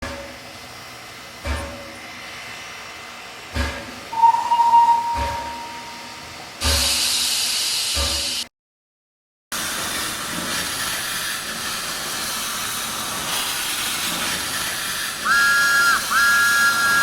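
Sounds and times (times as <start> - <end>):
steam locomotive whistle: 4.1 - 7.1, 14.6 - 17.0
hiss of escaping steam: 9.6 - 17.0.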